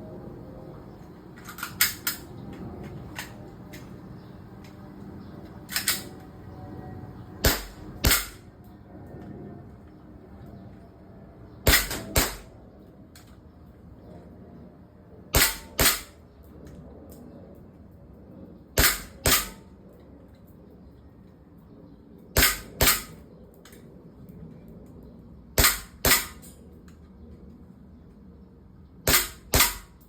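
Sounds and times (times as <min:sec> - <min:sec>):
airsoft gun shots: 0:07.4 - 0:08.4, 0:11.7 - 0:12.5, 0:15.4 - 0:16.2, 0:18.8 - 0:19.6, 0:22.4 - 0:23.2, 0:25.6 - 0:26.4, 0:29.1 - 0:30.0.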